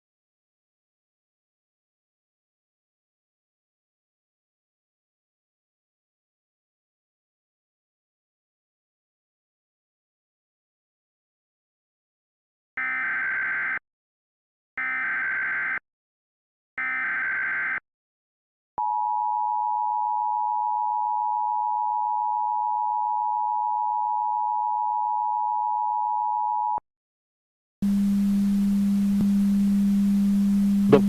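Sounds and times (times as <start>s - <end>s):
two-tone attention signal: 27.8s - 31.0s.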